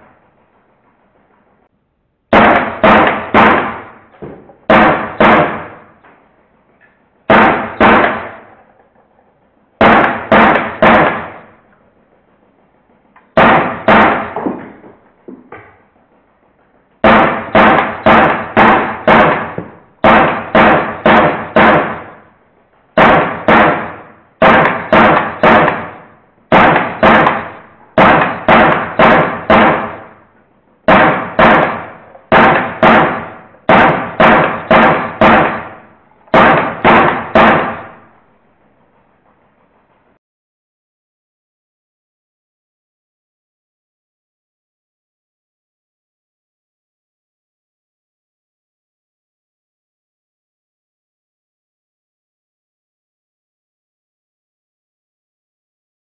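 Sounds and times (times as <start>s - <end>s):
bb gun firing in rapid bursts: 2.3s - 6.0s, 7.3s - 8.6s, 9.8s - 11.6s, 13.3s - 15.1s, 17.0s - 22.4s, 23.0s - 38.3s.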